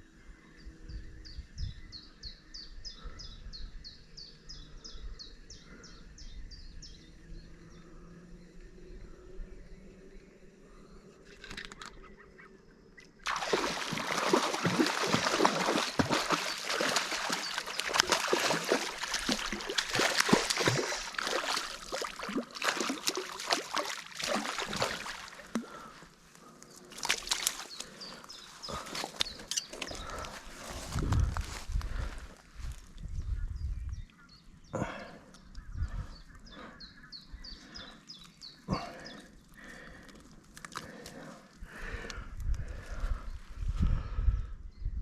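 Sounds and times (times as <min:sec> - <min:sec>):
water splashing and sloshing: 0:13.1 - 0:26.0, 0:26.8 - 0:31.6.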